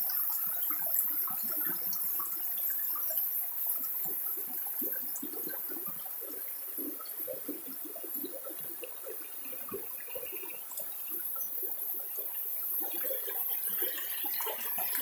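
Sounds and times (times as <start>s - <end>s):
water trickling and bubbling: 0.0s - 15.0s.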